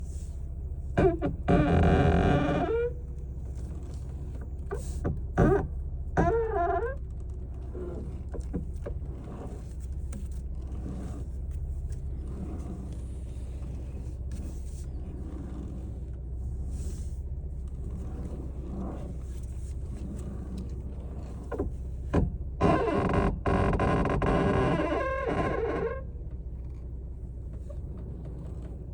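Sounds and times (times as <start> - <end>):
car engine low rumble: 0.0 - 28.9.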